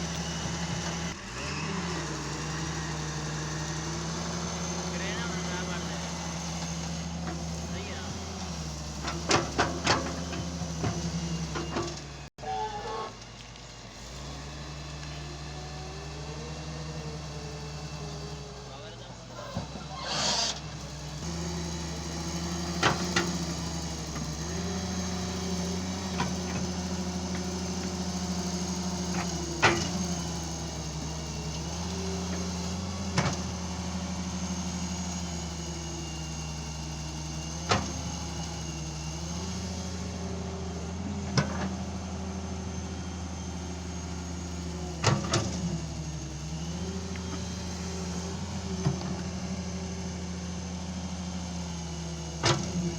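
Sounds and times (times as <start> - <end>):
excavator diesel engine running: 0.0 - 52.9.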